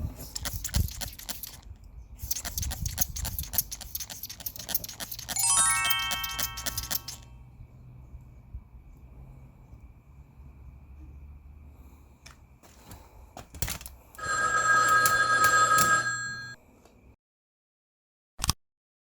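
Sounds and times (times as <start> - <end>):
telephone bell ringing: 5.4 - 7.1, 14.2 - 16.6.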